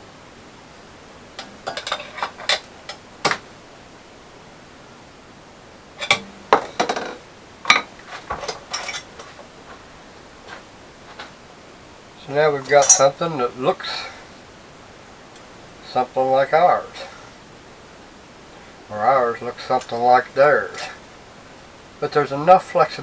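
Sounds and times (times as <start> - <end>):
metal pieces clinking: 1.4 - 2.7, 6.0 - 7.1, 12.7 - 13.2.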